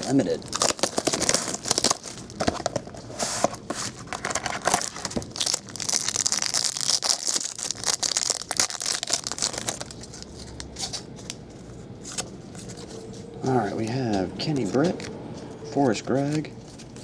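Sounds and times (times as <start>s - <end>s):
plastic wrapping crinkling and tearing: 0.0s - 11.4s.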